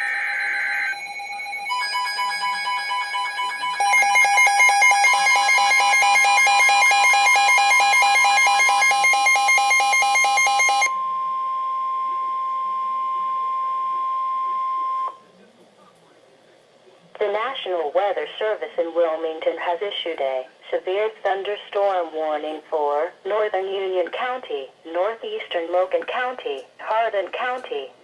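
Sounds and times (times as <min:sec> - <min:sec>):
pulsing warbling alarm tones: 0:00.0 - 0:15.1
single steady alarm tone: 0:00.0 - 0:15.2.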